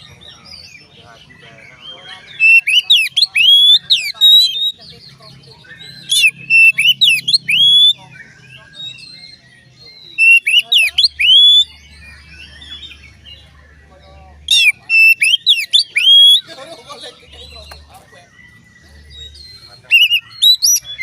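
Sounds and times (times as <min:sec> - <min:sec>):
bird singing whistled phrases: 0:01.7 - 0:04.9, 0:05.6 - 0:13.4, 0:14.5 - 0:16.5, 0:19.0 - 0:21.0.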